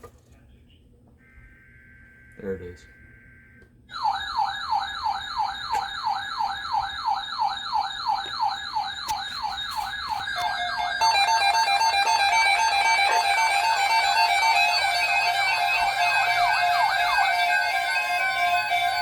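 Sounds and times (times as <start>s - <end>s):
music with stepping notes: 9.3s - 19.0s.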